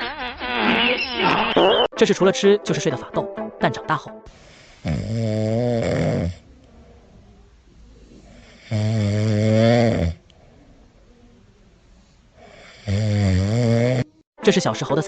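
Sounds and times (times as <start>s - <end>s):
dog snoring: 4.7s - 6.4s, 8.4s - 10.2s, 12.5s - 14.2s.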